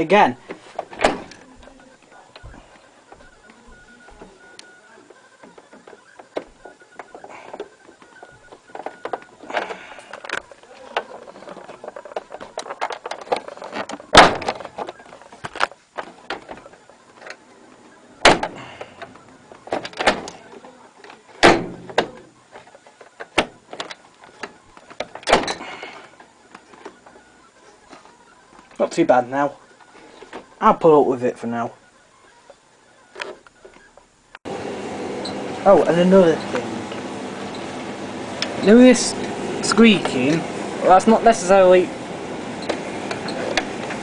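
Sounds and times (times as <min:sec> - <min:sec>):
sharp knocks: 0:18.2 - 0:18.6, 0:21.4 - 0:22.2.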